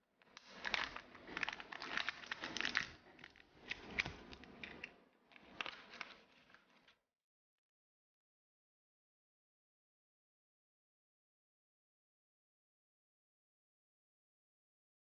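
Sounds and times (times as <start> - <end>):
wrapper crinkling: 0.4 - 2.9.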